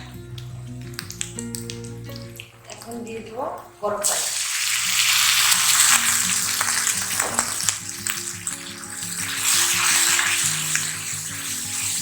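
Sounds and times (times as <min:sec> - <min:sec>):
background music: 0:00.0 - 0:12.0
masala sizzling in oil: 0:03.9 - 0:12.0.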